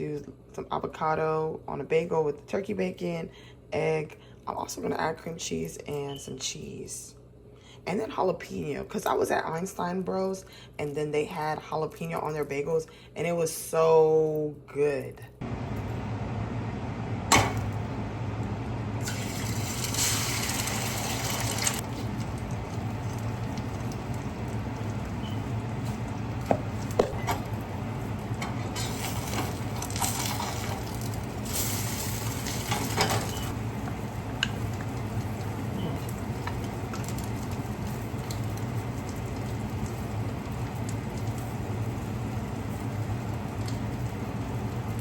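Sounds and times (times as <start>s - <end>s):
steady low hum: 0.0s - 45.0s
tap running: 26.4s - 27.5s.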